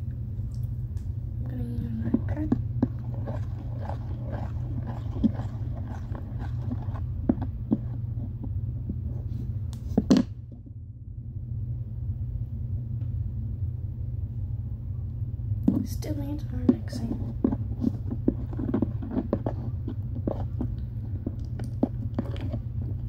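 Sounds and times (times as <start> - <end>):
low hum: 0.0 - 23.0
pen stirring slime: 1.5 - 10.2, 15.7 - 23.0.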